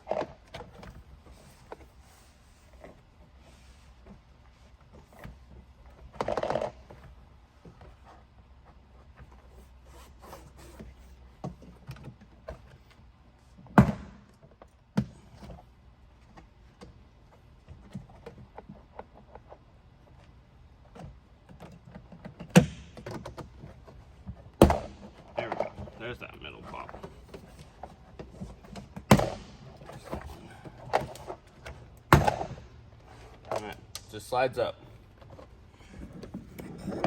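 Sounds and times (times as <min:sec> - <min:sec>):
handling clicks and rustling: 0:16.2 - 0:37.0.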